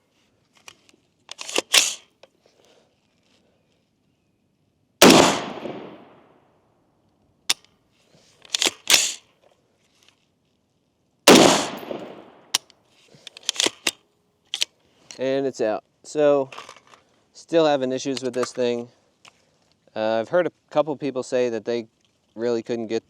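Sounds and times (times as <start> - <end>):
sharp metallic clicks: 1.3 - 2.0, 8.5 - 9.2, 13.3 - 14.7
rifle shots with echo: 5.0 - 6.2, 11.3 - 12.6.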